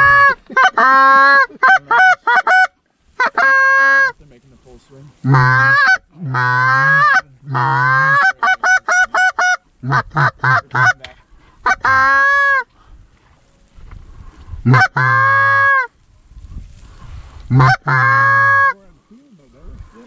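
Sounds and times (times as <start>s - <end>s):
goose call honks: 0.0s - 4.2s, 5.2s - 12.7s, 14.6s - 15.9s, 17.5s - 18.8s.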